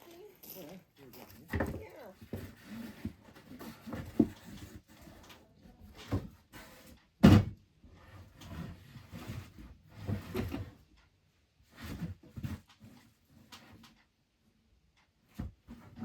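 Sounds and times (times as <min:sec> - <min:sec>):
knocks and thumps of handling: 0:01.2 - 0:05.2.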